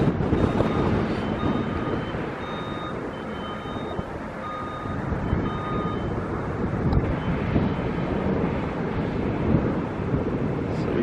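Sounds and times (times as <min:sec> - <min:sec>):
wind buffeting microphone: 0:00.0 - 0:11.0
reversing alarm beeping: 0:00.3 - 0:06.2.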